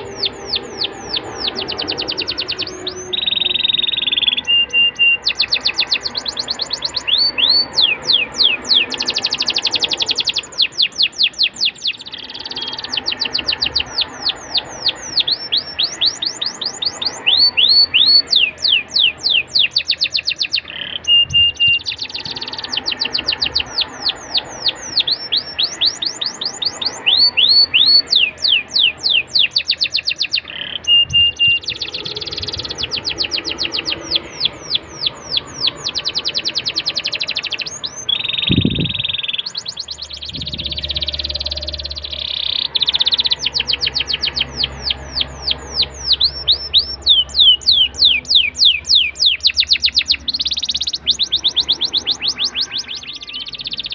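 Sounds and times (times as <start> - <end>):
canary singing: 0.0 - 53.9.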